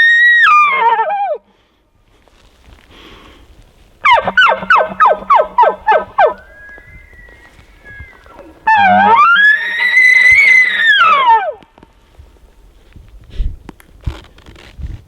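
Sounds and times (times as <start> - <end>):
elk bugling whistle: 4.0 - 11.6.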